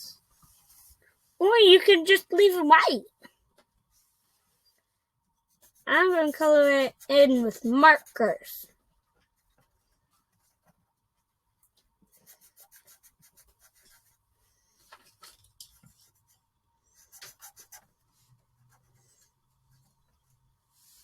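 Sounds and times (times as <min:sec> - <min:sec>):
marker strokes on paper: 0:03.9 - 0:10.8, 0:12.1 - 0:14.9, 0:15.7 - 0:20.1.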